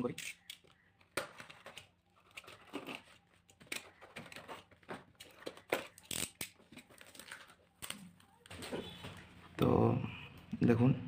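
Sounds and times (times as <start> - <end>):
packaging crinkling and rustling: 0.7 - 9.3.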